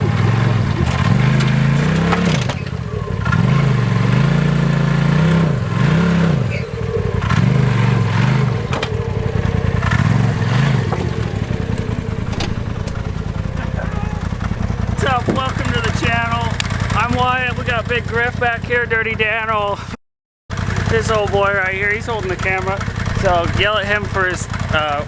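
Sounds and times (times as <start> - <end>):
sharp metallic knocks and clatter: 0.0 - 4.4, 7.2 - 17.0
off-road vehicle engine revving: 0.0 - 19.8, 20.5 - 25.0.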